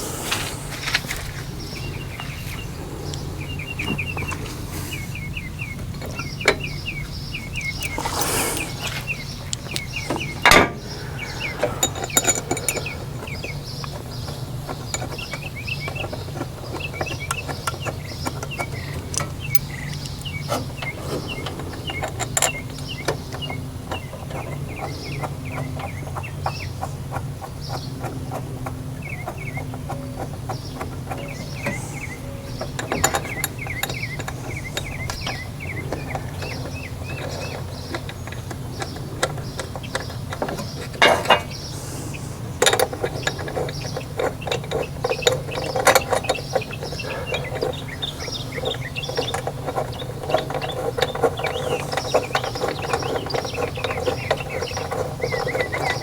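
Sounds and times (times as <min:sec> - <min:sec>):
birds chirping: 0:00.0 - 0:56.0
hand tools clicking and clinking: 0:00.0 - 0:56.0
steady low hum: 0:00.0 - 0:56.0.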